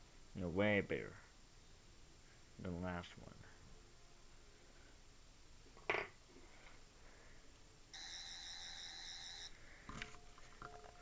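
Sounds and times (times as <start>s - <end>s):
warbling buzzy toy tone: 8.0s - 9.5s.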